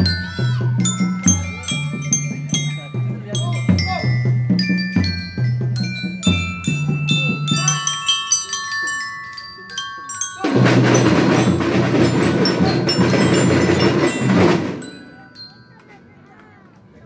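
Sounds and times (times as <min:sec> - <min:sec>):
glockenspiel notes: 0:00.0 - 0:16.4
low drum tones: 0:10.4 - 0:15.1.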